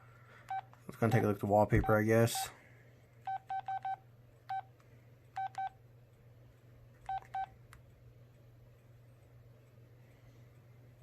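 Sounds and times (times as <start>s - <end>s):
faint low hum: 0.0s - 11.0s
phone keypad beeps: 3.3s - 4.7s, 5.4s - 5.8s, 7.1s - 7.6s.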